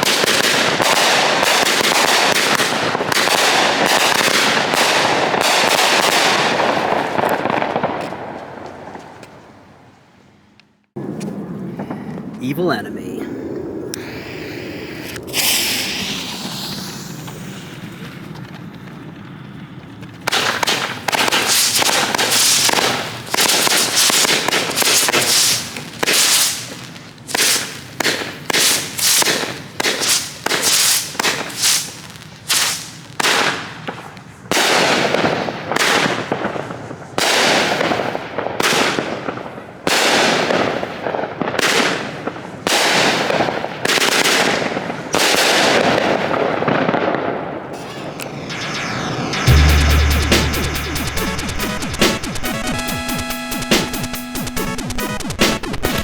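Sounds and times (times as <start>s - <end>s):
firework shots firing: 0.0s - 9.0s, 14.0s - 53.0s
firework fuse hissing: 14.0s - 18.4s, 20.3s - 34.2s.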